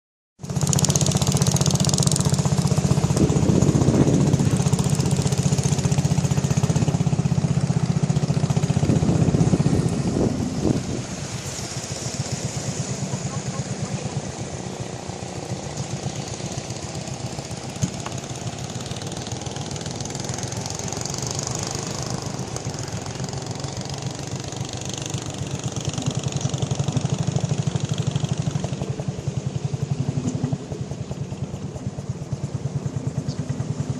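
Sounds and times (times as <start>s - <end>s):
boat engine chugging: 0.4s - 33.9s.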